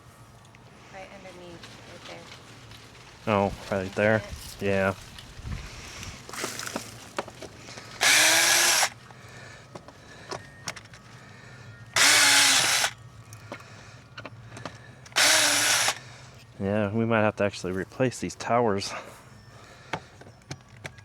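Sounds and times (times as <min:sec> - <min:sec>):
power drill bursts: 0:08.0 - 0:09.0, 0:11.9 - 0:13.0, 0:15.1 - 0:16.0.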